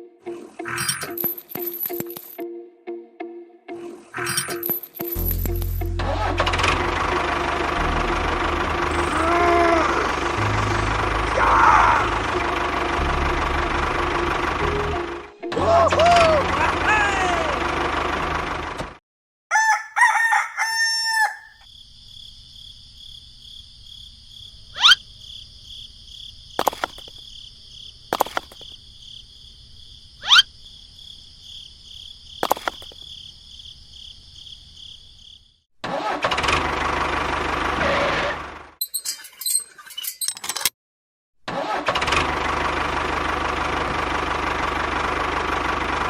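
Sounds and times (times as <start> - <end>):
low hum: 4.9 - 16.5
high whine: 5.6 - 15.2
rooster crowing: 19.5 - 21.7.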